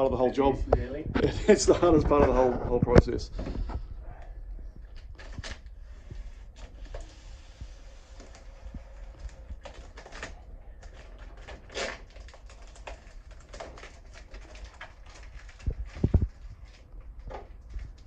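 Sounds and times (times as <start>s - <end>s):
plastic film peeling and crinkling: 4.9s - 18.0s.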